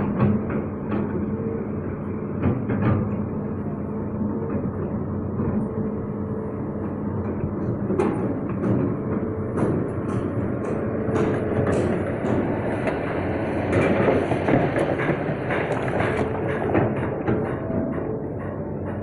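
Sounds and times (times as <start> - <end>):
excavator running: 0.0 - 19.0.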